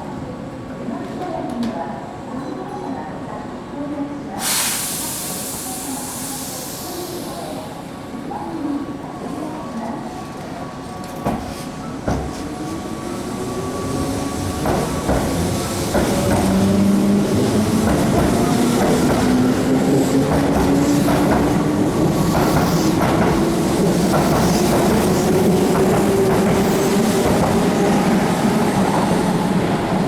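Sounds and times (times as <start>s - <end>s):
train wheels rumbling: 13.4s - 30.0s
rail joint clacks: 14.6s - 19.5s.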